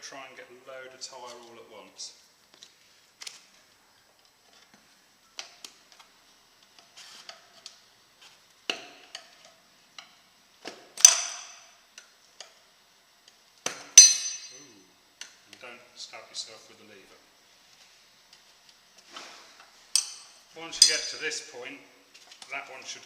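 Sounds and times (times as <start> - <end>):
ringing metal clank: 14.0 - 14.6.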